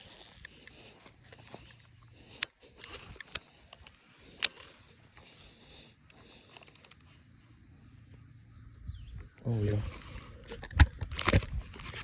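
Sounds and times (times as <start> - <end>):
outdoor background noise: 0.0 - 12.0
sharp clicks: 2.4 - 4.7.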